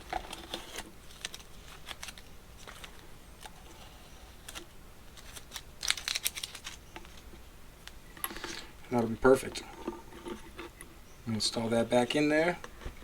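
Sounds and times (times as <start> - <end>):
masking tape peeling off plastic: 4.4 - 6.8.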